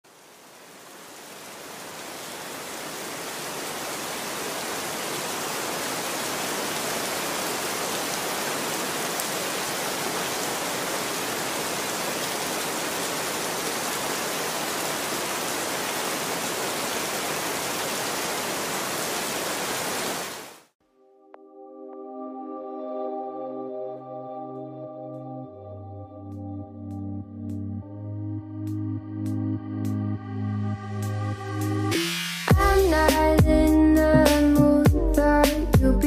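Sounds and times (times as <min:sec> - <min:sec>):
steady rain: 0:00.0 - 0:20.8.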